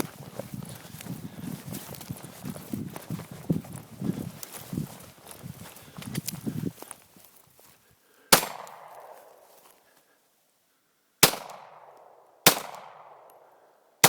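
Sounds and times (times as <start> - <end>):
pistol shots with echo: 8.3 - 9.4, 11.2 - 13.3.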